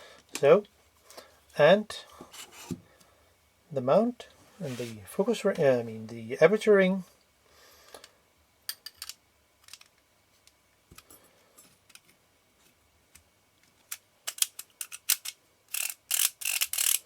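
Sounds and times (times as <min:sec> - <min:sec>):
small metal parts clicking: 0:08.7 - 0:10.0, 0:13.9 - 0:17.0.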